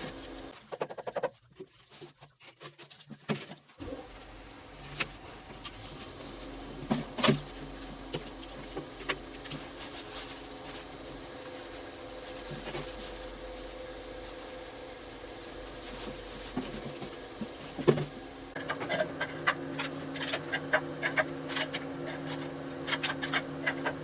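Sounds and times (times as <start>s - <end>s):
machine humming: 0.0s - 0.5s, 5.8s - 24.0s.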